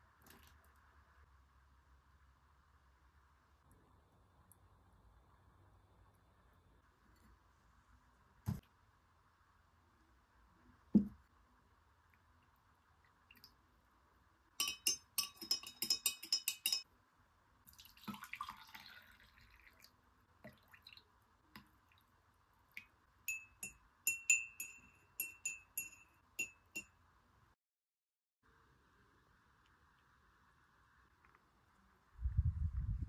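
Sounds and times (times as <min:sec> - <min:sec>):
glassware clinking: 0:14.6 - 0:16.8, 0:23.3 - 0:26.9.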